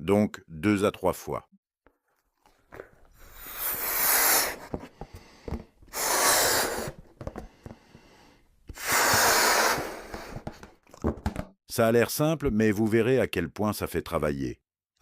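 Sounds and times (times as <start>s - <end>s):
person blowing up a balloon: 3.0s - 10.8s
quiet breathing: 3.1s - 10.6s.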